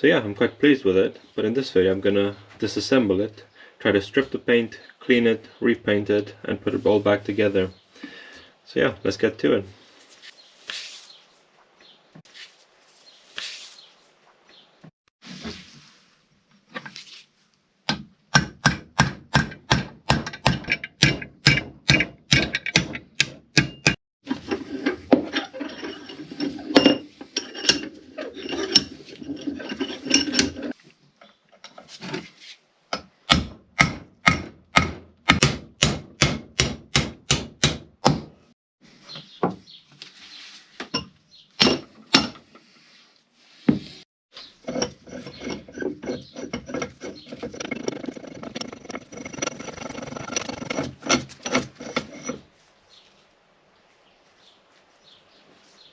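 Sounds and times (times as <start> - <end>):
scraping or rubbing: 12.2 - 14.2, 15.2 - 17.4, 24.2 - 30.8, 39.9 - 40.8, 42.4 - 53.2.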